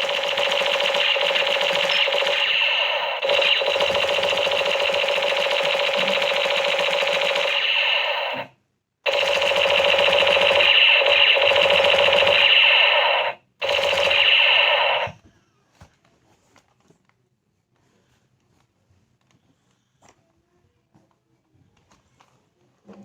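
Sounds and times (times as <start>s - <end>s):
toy machine gun rattling: 0.0s - 8.5s, 9.1s - 15.1s.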